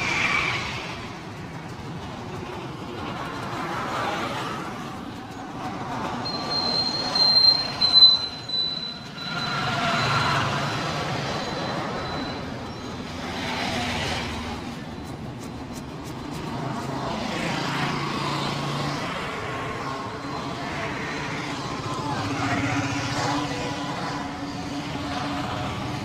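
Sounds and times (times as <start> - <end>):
street traffic: 0.0 - 26.0
long high squeal: 6.2 - 13.2.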